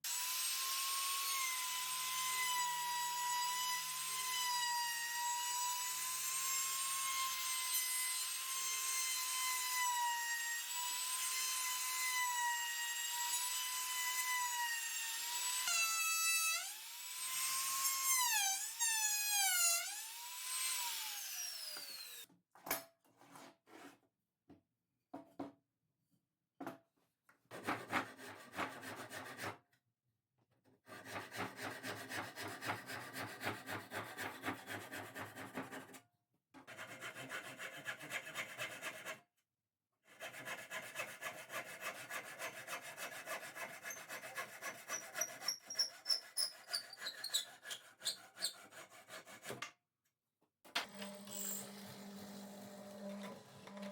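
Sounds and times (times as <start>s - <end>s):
power tool motor whine: 50.8s - 53.9s.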